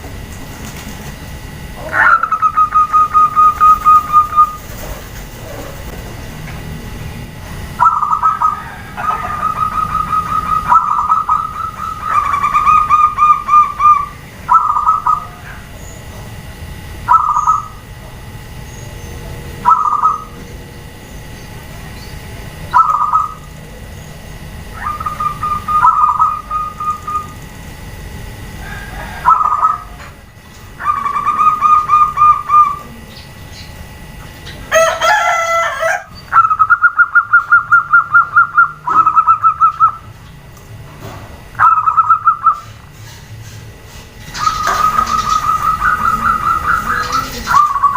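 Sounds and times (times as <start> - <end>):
doves cooing: 0.0 - 40.5, 41.4 - 47.9
harsh bird call: 17.1 - 17.8, 24.7 - 27.4, 44.3 - 47.9.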